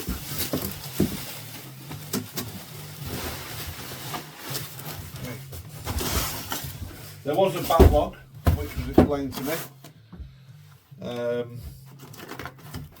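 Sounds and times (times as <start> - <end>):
packaging rustling: 0.0 - 8.8.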